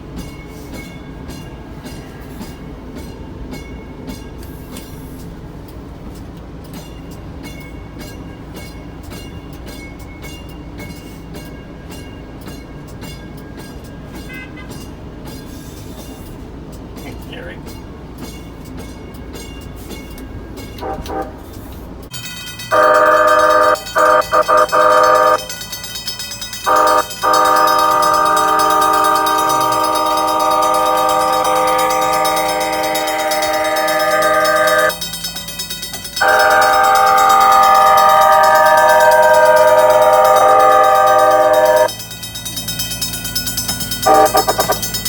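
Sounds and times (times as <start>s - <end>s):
multi-tone train horn: 14.3s - 14.8s, 20.8s - 21.5s, 22.5s - 25.6s, 26.6s - 35.1s, 36.2s - 42.0s, 44.0s - 45.0s.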